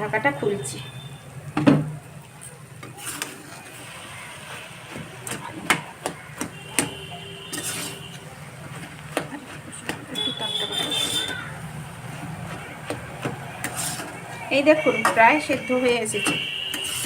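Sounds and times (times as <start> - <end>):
metal spatula scraping a pan: 2.8 - 5.6, 6.5 - 17.0.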